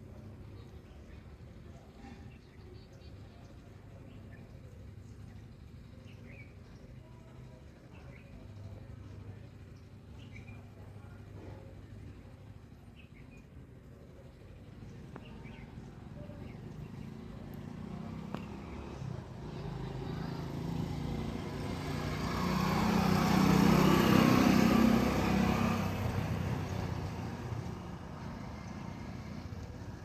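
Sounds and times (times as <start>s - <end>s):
vehicle passing by: 15.1s - 30.0s.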